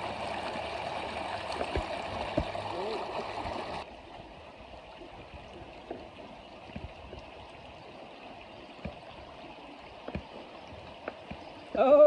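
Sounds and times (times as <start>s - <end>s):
creek water running over rocks: 0.0s - 12.0s
small knocks or splashes: 1.4s - 3.6s, 5.5s - 8.0s, 8.8s - 11.5s.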